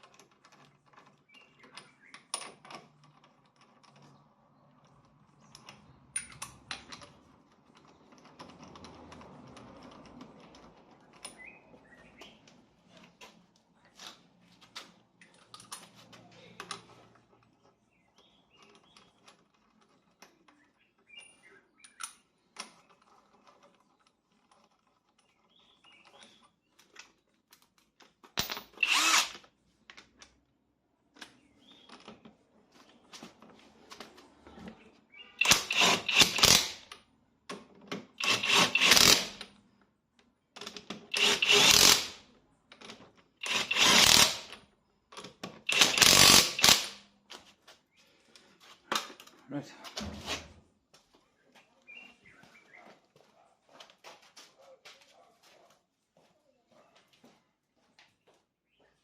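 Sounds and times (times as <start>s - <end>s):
faint clicks and handling noise: 0.0s - 28.6s, 29.4s - 35.1s, 47.0s - 50.1s
impact wrench spinning: 28.4s - 29.4s, 35.4s - 36.8s, 38.2s - 39.4s, 41.1s - 42.2s, 43.4s - 44.5s, 45.7s - 47.0s.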